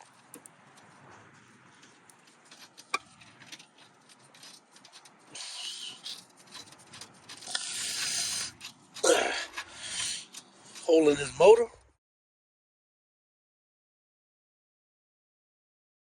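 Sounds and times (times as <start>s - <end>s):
small metal clicks: 0.0s - 10.9s
rubbing and scraping: 0.0s - 11.8s.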